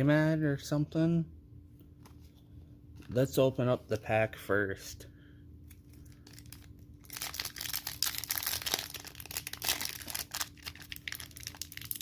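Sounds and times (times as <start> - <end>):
wrapper tearing and crinkling: 6.0 - 12.0.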